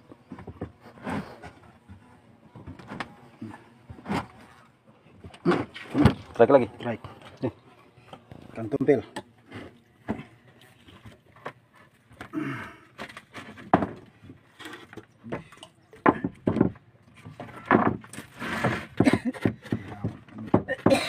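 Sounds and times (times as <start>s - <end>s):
knocks and thuds on wooden boards: 13.4s - 14.3s, 15.3s - 21.0s.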